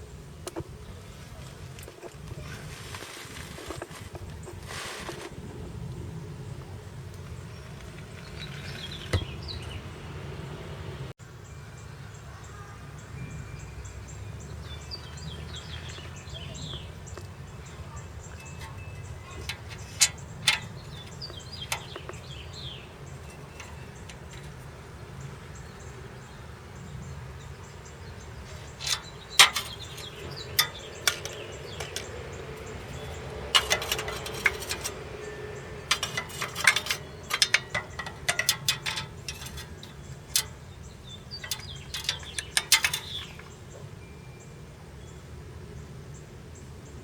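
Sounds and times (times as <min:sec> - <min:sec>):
metal tools clinking: 0:16.6 - 0:25.0, 0:28.5 - 0:43.8.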